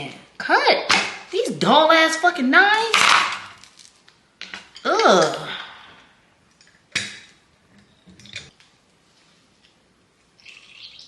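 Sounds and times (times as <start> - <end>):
soft rustle: 8.6 - 9.8.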